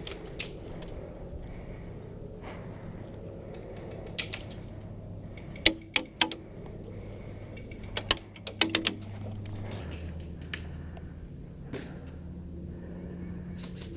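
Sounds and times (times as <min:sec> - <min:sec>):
airsoft gun shots: 0:05.7 - 0:06.4.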